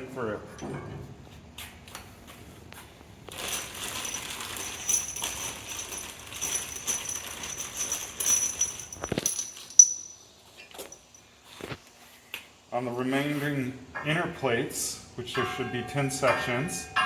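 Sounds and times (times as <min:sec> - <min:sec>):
metal pin scraping and clinking: 0:03.3 - 0:10.2, 0:10.8 - 0:11.2.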